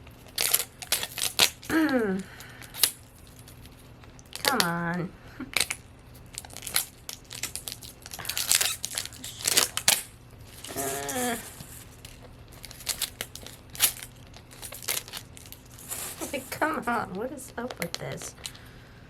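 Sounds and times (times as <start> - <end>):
plastic wrap crinkling and tearing: 0.2 - 1.8, 5.6 - 18.6.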